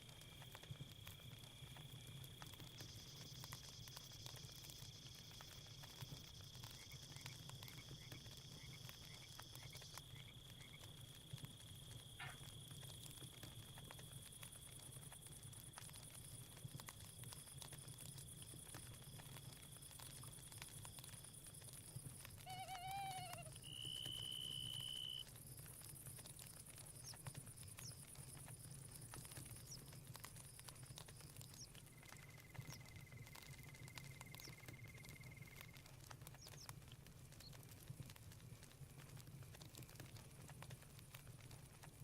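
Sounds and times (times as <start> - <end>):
campfire crackles: 0.0 - 42.0
lower pulsing insect trill: 0.1 - 10.8, 22.2 - 35.8
insects trilling: 0.1 - 36.7
short wavering animal call: 22.5 - 23.5.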